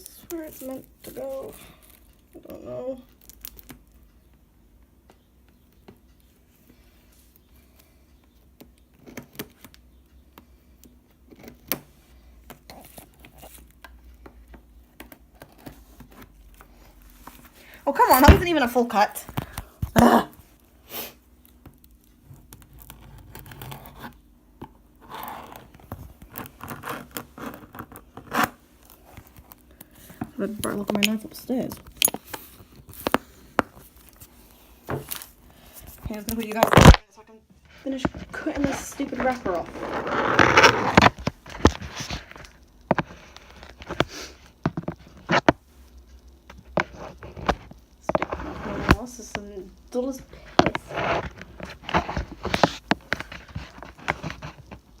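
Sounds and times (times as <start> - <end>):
knife scraping plastic wrapper: 38.4 - 42.5.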